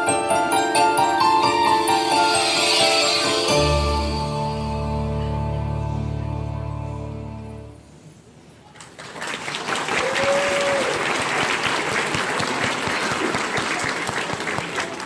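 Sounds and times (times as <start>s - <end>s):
audience clapping: 8.7s - 15.0s.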